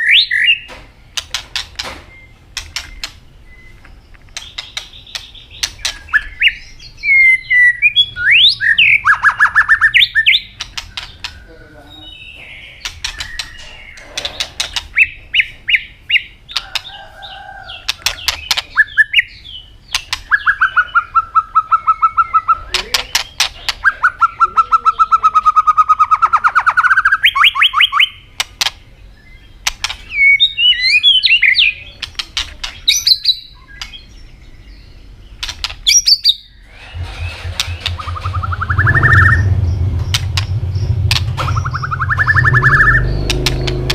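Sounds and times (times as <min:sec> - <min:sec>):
songbird singing: 0:00.0 - 0:43.9
low buzz: 0:36.7 - 0:43.9.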